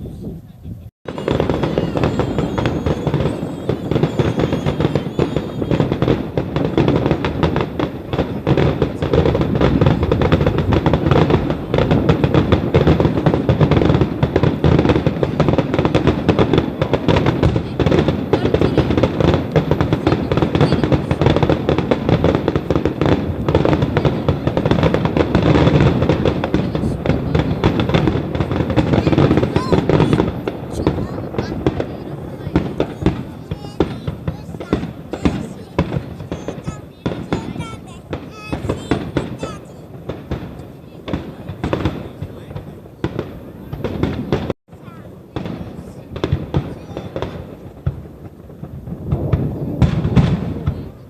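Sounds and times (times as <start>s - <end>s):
fireworks bangs and crackles: 0.0s - 51.0s.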